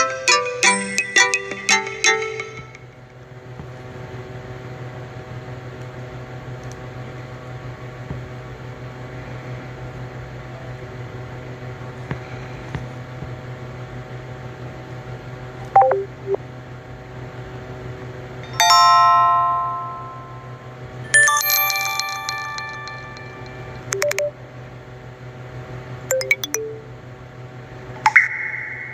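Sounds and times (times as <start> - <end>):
bell-like phone chime: 0.0 - 2.9, 15.8 - 16.3, 18.4 - 24.4, 26.1 - 26.9
quick falling ringtone notes: 0.0 - 2.9, 15.8 - 16.4, 18.4 - 24.4, 26.1 - 26.9.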